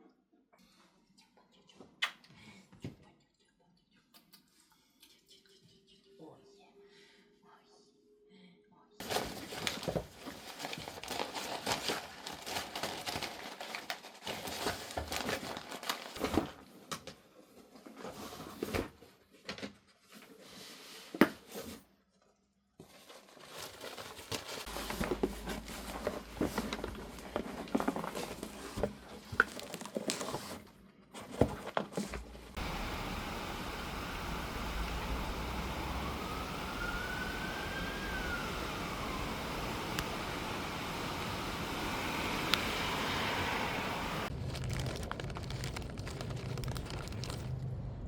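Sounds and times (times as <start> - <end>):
rustling and crinkling: 9.0 - 21.8, 22.8 - 32.6, 44.3 - 47.8.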